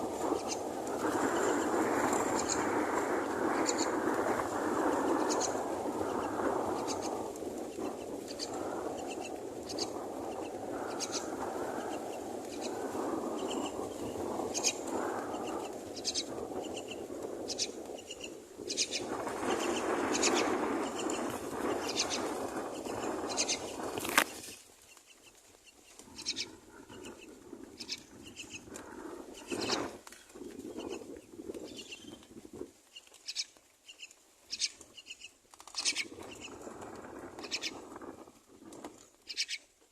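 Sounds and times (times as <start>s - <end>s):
steady rushing background: 0.0s - 24.4s.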